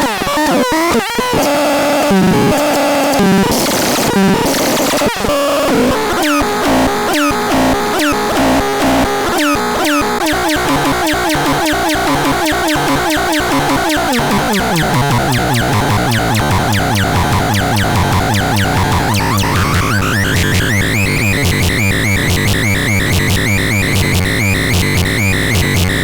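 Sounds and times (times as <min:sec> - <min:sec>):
synthesizer falling chirps: 0:12.2 - 0:24.0
steady low bass tone: 0:14.2 - 0:25.8.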